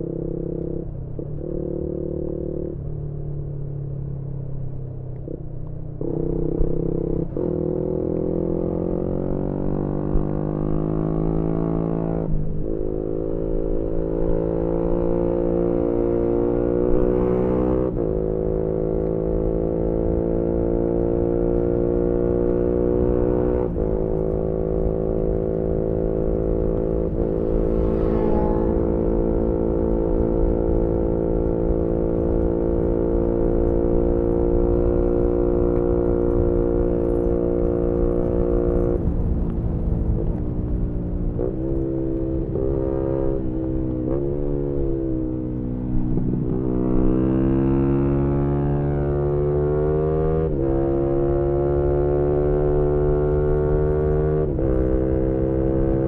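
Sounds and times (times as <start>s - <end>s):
wind noise rumble: 0.0s - 56.0s
motorcycle engine accelerating: 4.7s - 56.0s.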